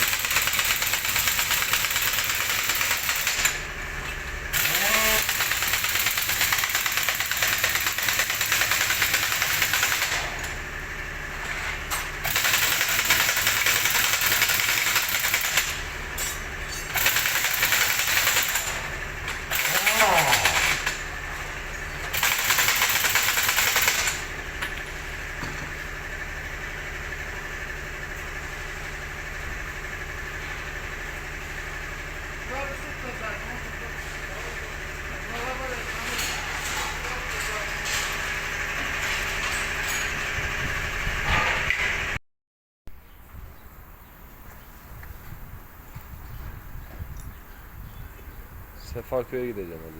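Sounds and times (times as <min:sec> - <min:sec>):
engine idling: 0:00.0 - 0:39.0.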